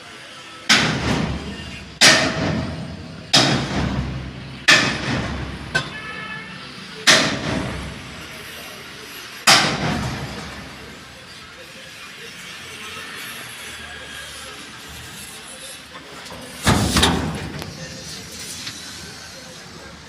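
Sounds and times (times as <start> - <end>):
hammer blows on sheet metal: 0.7 - 6.4, 7.0 - 8.4.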